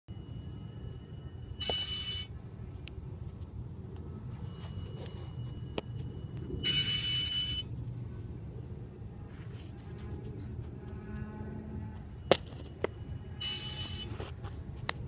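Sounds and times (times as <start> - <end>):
thin high whistle: 0.1 - 2.3, 4.3 - 7.7, 12.9 - 14.2
steady low hum: 0.1 - 15.0.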